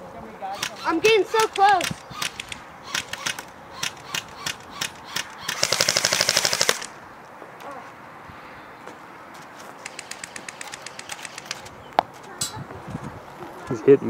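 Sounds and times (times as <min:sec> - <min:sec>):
airsoft rifle shots: 0:00.5 - 0:07.0, 0:09.8 - 0:11.7.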